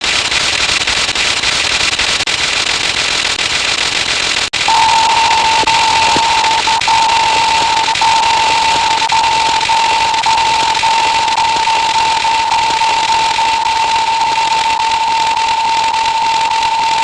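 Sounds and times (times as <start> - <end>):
steady high beep-like tone: 4.7 - 17.0.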